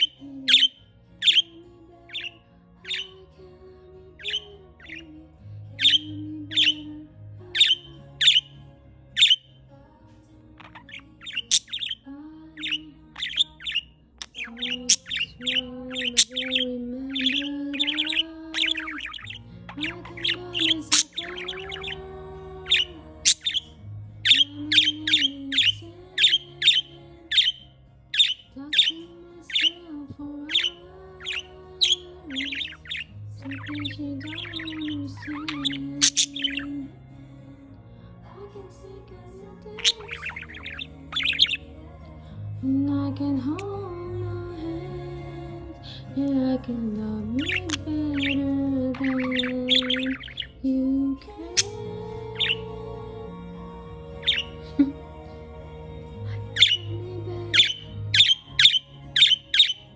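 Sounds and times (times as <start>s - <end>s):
budgerigars chirping: 0.0s - 3.3s, 4.1s - 9.5s, 10.5s - 36.9s, 39.7s - 41.7s, 47.2s - 50.6s, 51.3s - 53.0s, 54.0s - 55.3s, 56.3s - 59.9s
pop song playing: 9.2s - 59.9s.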